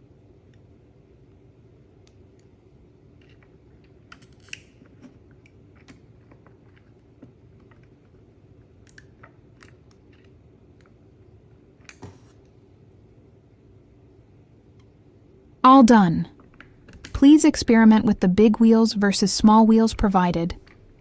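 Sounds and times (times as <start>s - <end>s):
faint steady hum: 0.0s - 21.0s
small parts clicking and tapping: 3.2s - 8.1s.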